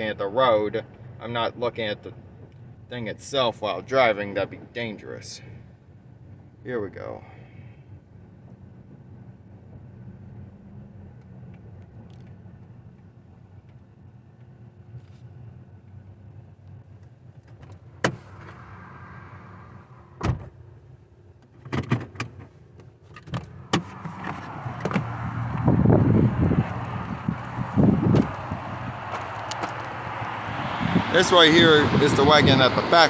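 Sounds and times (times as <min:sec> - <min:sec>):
car cabin hum: 0:19.6 - 0:33.0
sharp clicks and knocks: 0:21.4 - 0:25.1, 0:29.1 - 0:29.9
rushing noise: 0:23.7 - 0:33.0.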